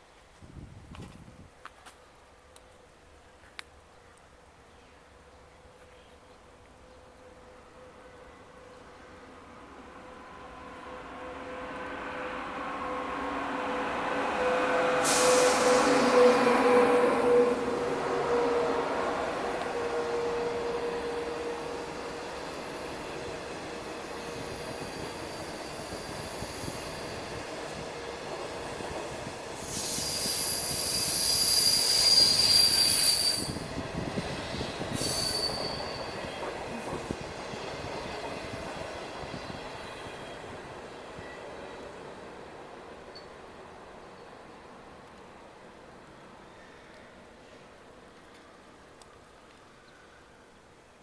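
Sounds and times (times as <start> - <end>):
train rolling past: 2.6 - 48.9
wheels squealing: 29.6 - 33.7.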